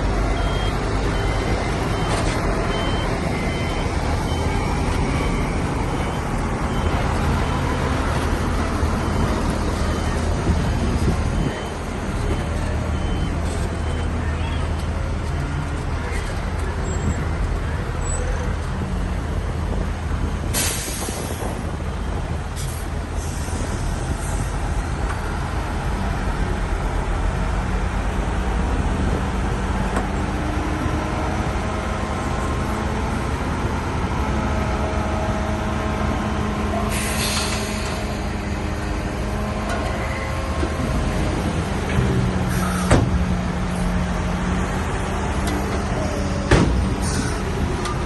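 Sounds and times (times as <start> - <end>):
diesel engine running under load: 0.0 - 48.0.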